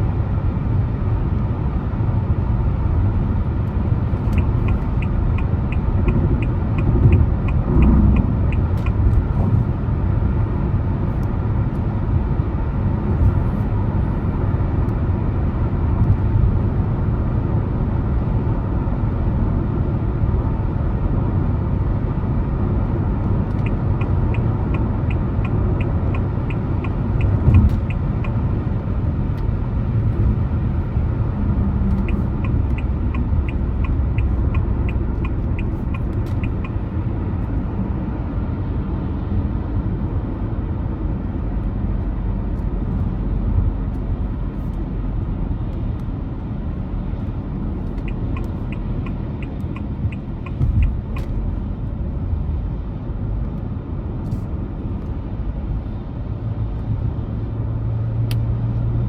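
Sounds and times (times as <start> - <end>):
car driving rumble: 0.0 - 59.0
turn signal ticking: 3.6 - 9.7, 23.2 - 37.7, 47.2 - 52.0.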